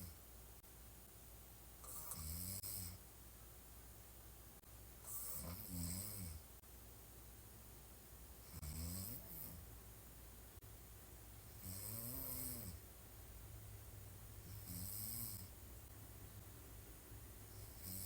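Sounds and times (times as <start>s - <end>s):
woman snoring: 1.8s - 3.0s, 5.1s - 6.4s, 8.5s - 9.6s, 11.5s - 12.8s, 14.5s - 15.5s, 17.5s - 18.0s.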